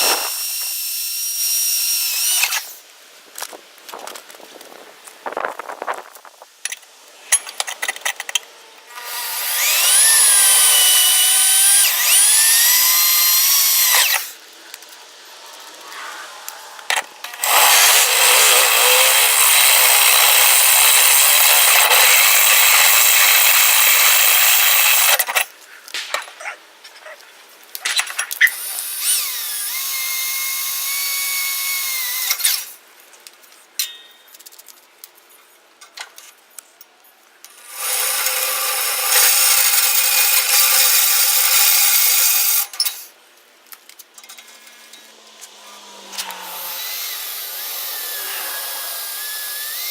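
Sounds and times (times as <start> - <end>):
power tool motor whine: 0.0 - 2.8, 8.9 - 14.4, 16.9 - 25.2, 44.6 - 49.9.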